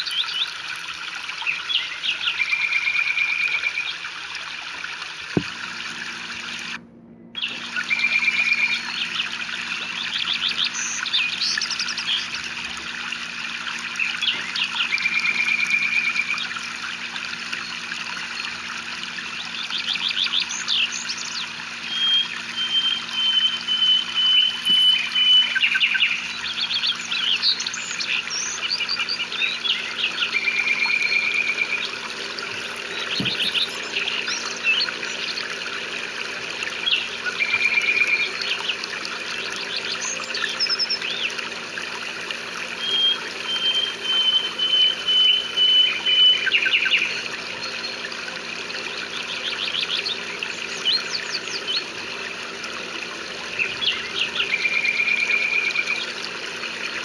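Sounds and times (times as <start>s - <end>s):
birds chirping and trilling: 0.0s - 4.2s, 7.4s - 52.4s, 53.3s - 57.0s
rain hiss: 24.0s - 54.7s.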